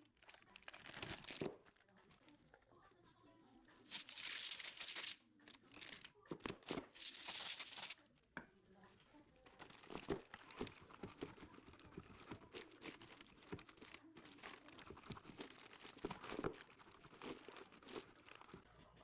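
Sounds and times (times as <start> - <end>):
handling rustling and clicks: 9.4 - 18.7.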